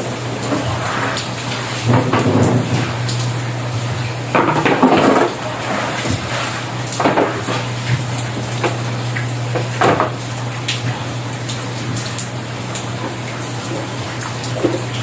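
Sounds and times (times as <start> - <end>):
constant low hum: 0.0 - 15.0
heavy rain hissing: 0.0 - 15.0
household objects clattering: 4.3 - 8.8.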